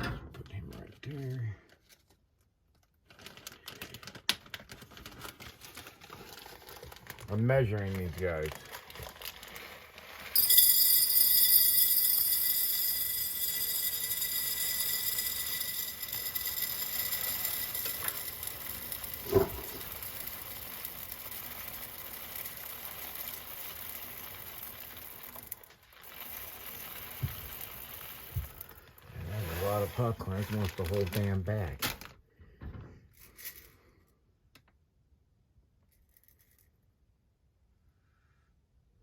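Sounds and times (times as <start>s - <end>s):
popcorn kernels pouring into container: 3.2s - 32.1s.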